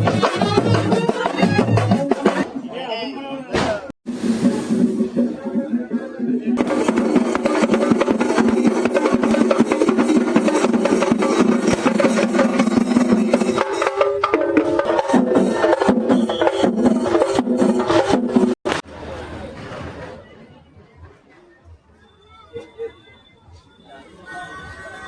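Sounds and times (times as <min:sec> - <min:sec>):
rapid drumming: 0:00.0 - 0:02.5, 0:04.1 - 0:18.8.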